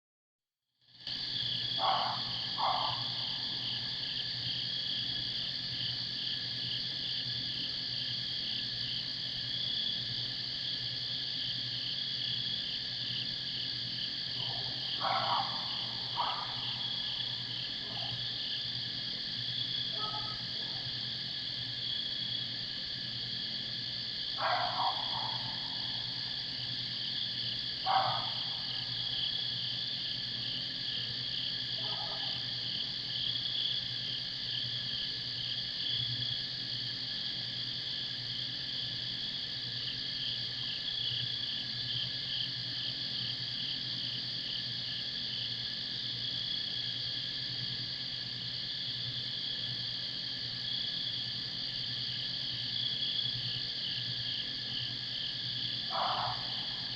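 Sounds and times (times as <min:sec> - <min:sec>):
crickets trilling: 0:01.0 - 0:56.9.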